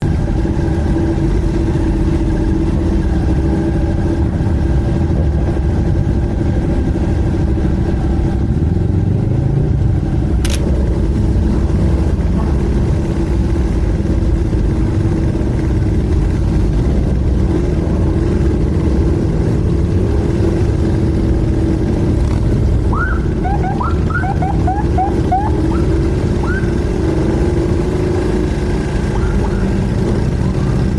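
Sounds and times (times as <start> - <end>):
motorcycle engine running: 0.0 - 30.9
sharp click: 10.4 - 10.7.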